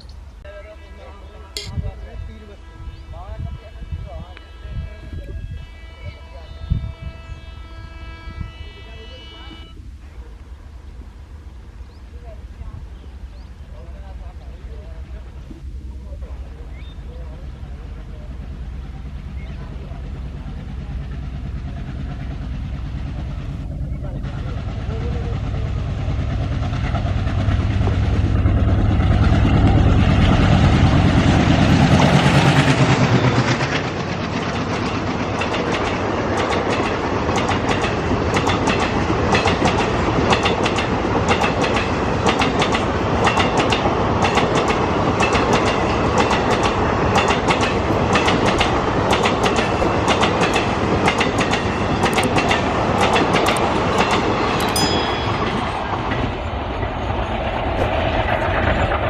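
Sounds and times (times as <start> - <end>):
diesel train engine: 0.0 - 59.0
train wheels clacking on rails: 17.3 - 59.0.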